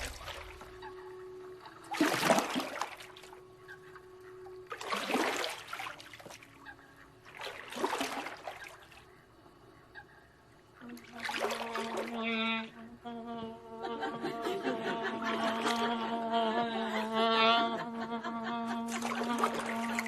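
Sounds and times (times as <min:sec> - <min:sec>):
water splashing: 0:00.0 - 0:09.3, 0:10.8 - 0:12.8, 0:15.2 - 0:15.9, 0:18.9 - 0:20.0.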